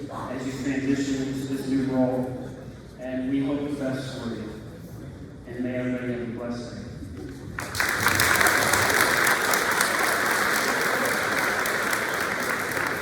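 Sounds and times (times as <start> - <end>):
audience applauding: 7.6 - 13.0.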